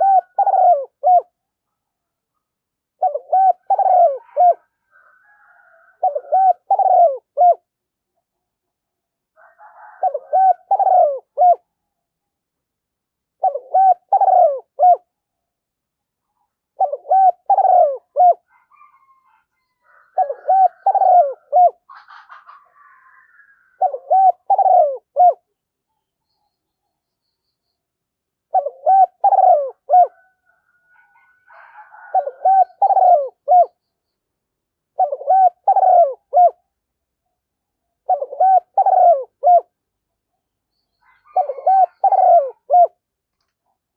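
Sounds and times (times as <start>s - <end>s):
dove cooing: 0.0s - 1.4s, 3.0s - 7.7s, 9.5s - 11.6s, 13.4s - 15.1s, 16.8s - 25.5s, 28.5s - 33.8s, 34.9s - 36.6s, 38.0s - 39.7s, 41.0s - 43.0s
faint bird chirps: 21.5s - 31.4s, 32.2s - 34.4s, 40.3s - 42.8s.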